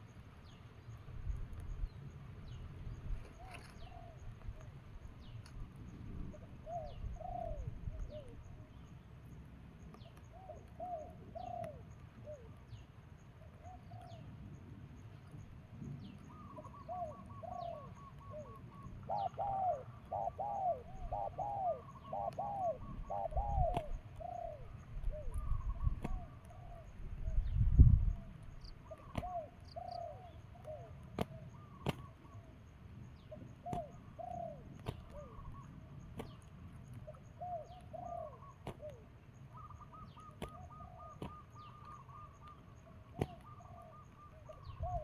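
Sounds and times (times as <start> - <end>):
small birds chirping: 0.0 - 45.0
doves cooing: 3.3 - 4.8, 6.2 - 8.8, 10.2 - 12.7, 16.2 - 27.4, 28.1 - 32.7, 33.3 - 45.0.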